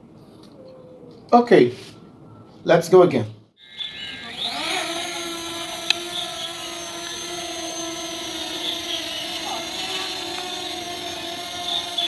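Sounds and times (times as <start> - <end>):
drone propellers whining: 3.6 - 12.0.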